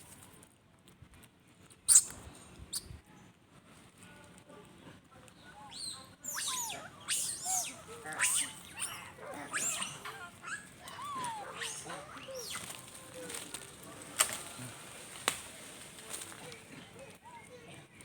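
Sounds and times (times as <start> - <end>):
monkeys squealing: 5.8 - 12.9.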